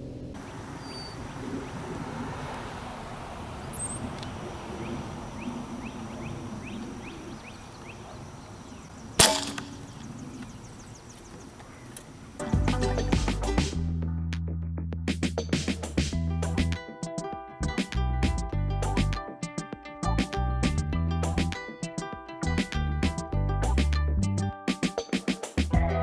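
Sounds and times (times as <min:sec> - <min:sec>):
faint high chirps: 0:00.6 - 0:01.8
air rifle shot: 0:09.2 - 0:10.8
music: 0:12.4 - 0:26.0.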